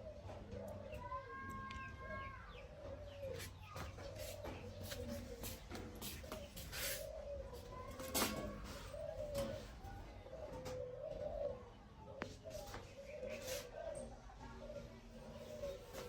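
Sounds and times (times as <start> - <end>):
bird cooing: 0.0 - 16.0.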